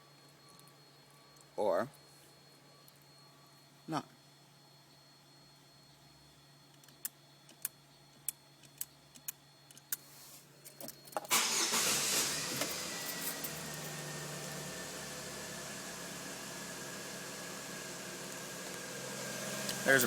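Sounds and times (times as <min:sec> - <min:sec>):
car engine cranking and idling: 0:11.3 - 0:20.0.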